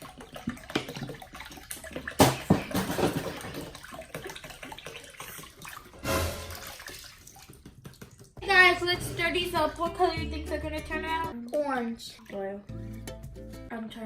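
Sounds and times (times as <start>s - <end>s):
water pouring into a bowl: 0.0s - 8.4s, 11.4s - 12.7s.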